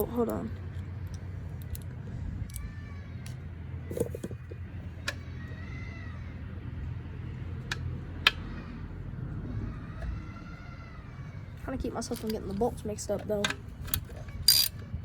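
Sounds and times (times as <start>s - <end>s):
metallic clicks of hand tools: 13.4s - 14.8s.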